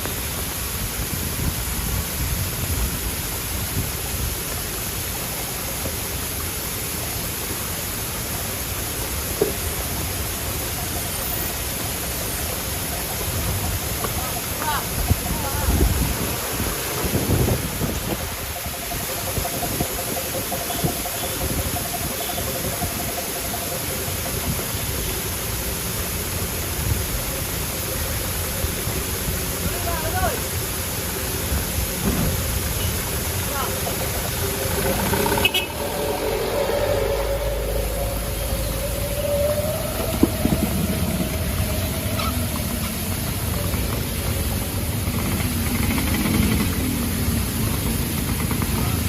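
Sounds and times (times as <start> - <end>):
heavy rain hissing: 0.0 - 49.0
wind gusting on microphone: 12.8 - 25.0, 30.9 - 49.0
vehicle engine running: 31.0 - 49.0.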